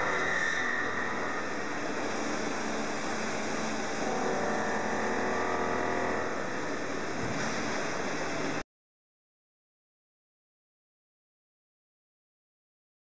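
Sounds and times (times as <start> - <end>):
milling machine running: 0.0 - 8.6.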